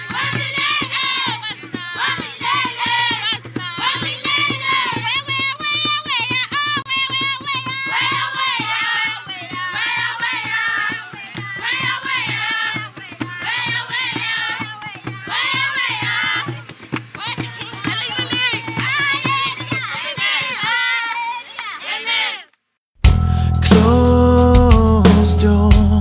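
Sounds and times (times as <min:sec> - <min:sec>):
hand percussion: 0:00.0 - 0:21.3, 0:23.0 - 0:26.0
person singing ornamented melody: 0:23.4 - 0:26.0.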